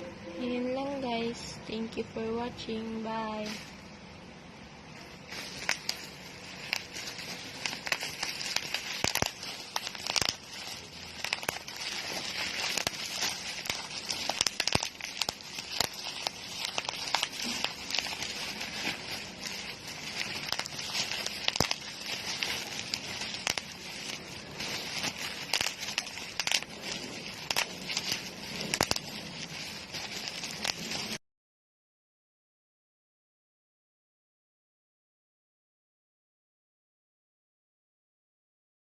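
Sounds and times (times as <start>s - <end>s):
plastic packaging crinkling: 3.3s - 3.9s, 5.0s - 31.2s.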